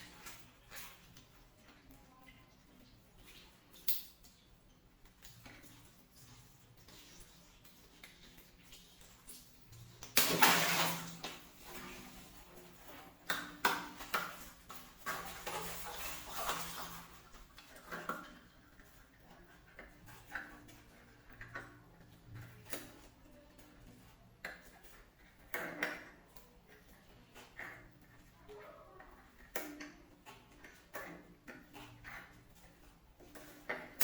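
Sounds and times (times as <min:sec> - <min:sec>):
water balloons popping and splashing: 0:07.9 - 0:18.8.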